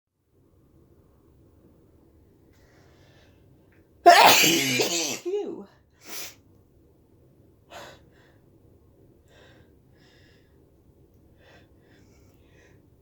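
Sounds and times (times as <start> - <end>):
woman sneezing: 4.1 - 5.5.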